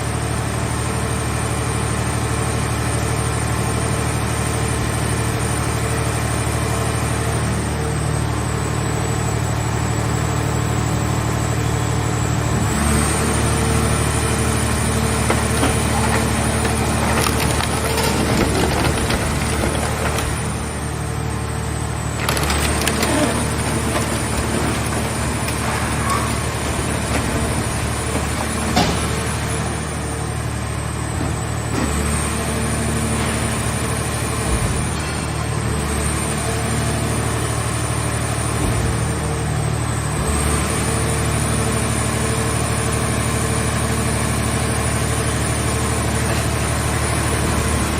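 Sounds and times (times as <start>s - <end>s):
hydraulic baler droning with whine: 0.0s - 47.9s
car shell cracking and crunching: 15.2s - 20.9s, 22.0s - 29.2s.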